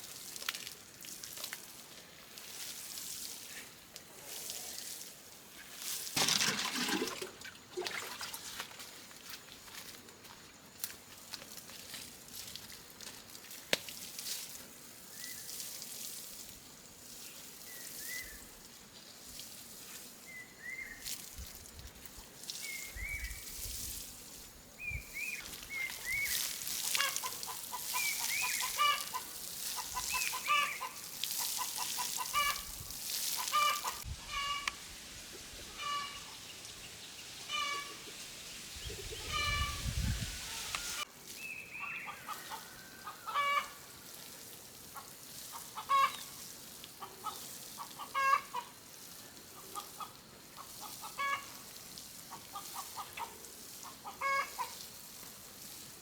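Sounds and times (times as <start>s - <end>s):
chickens clucking: 26.9s - 32.7s, 33.4s - 34.8s, 35.7s - 36.4s, 39.0s - 41.0s, 42.1s - 43.8s, 45.0s - 46.3s, 47.0s - 48.7s, 49.6s - 51.6s, 52.3s - 54.8s.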